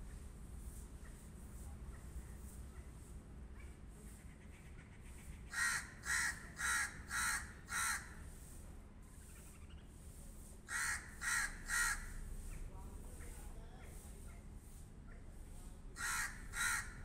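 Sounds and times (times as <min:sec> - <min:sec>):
crow cawing: 0:05.5 - 0:08.2, 0:10.7 - 0:12.2, 0:16.0 - 0:17.0.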